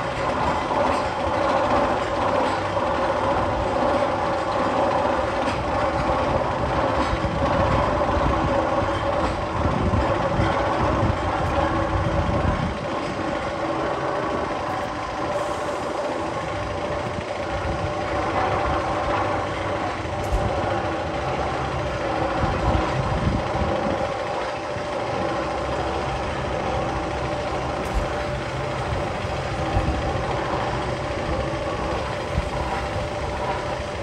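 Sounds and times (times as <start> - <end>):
heavy engine drone: 0.0 - 34.0.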